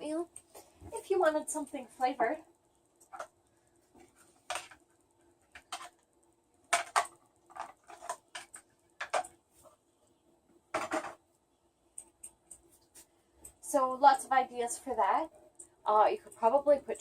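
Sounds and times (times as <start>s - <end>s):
faint steady hum: 0.0s - 17.0s
kitchen containers clicking and tapping: 6.7s - 9.3s, 10.8s - 11.2s.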